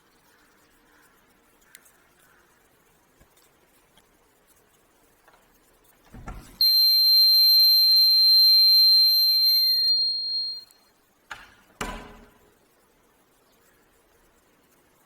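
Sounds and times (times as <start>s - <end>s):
high-pitched alarm buzzer tone: 6.6s - 10.7s.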